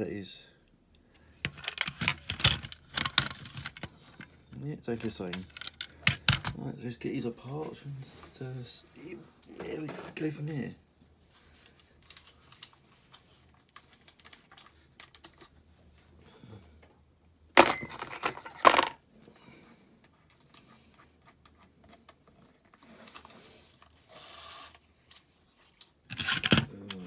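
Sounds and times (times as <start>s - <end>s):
metal clicks of toys and tools: 5.0s - 6.6s, 26.1s - 27.0s.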